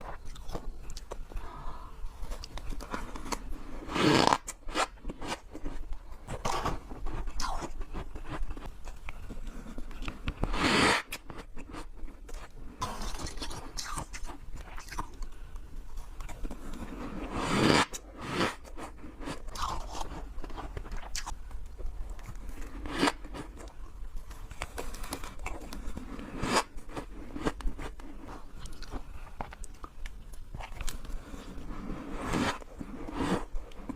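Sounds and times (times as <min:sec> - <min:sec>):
crunchy bites and chewing: 0:16.2 - 0:21.4.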